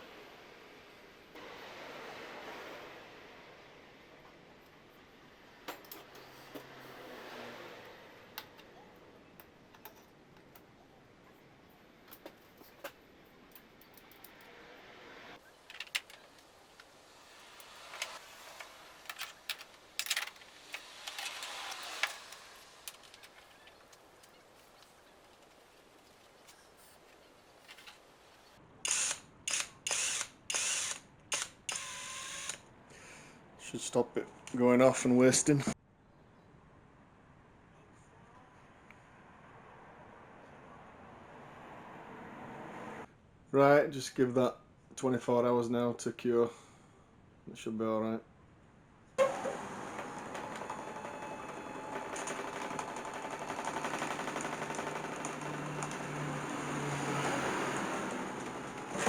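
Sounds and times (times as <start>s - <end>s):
hand tools clicking and tapping: 9.4s - 10.7s, 12.0s - 14.5s, 15.6s - 24.4s.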